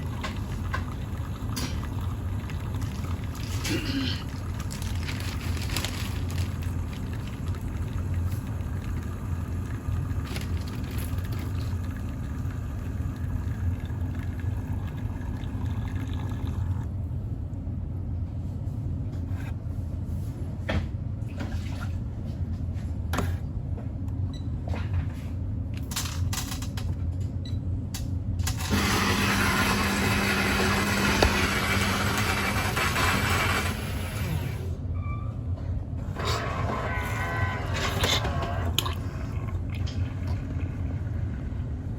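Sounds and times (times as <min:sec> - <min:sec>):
water running: 0:00.0 - 0:16.9.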